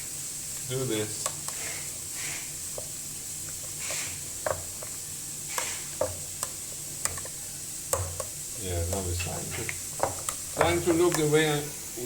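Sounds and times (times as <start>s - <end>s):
potato masher mashing potatoes: 0.5s - 11.5s
masher knocking bowl: 7.9s - 9.1s, 10.0s - 11.3s.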